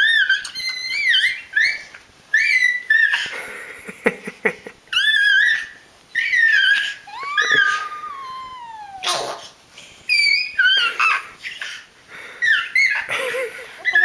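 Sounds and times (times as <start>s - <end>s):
dog whining: 5.0s - 9.5s.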